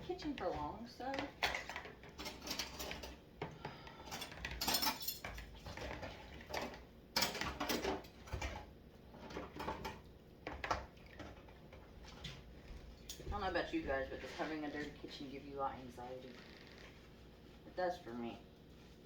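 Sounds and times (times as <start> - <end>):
dishes and cutlery clinking: 1.1 - 3.2, 4.1 - 8.6.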